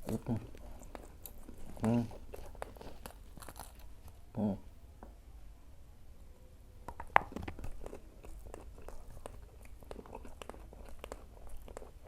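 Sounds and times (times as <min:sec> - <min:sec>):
crunchy chewing: 0:00.0 - 0:04.2, 0:07.2 - 0:12.0.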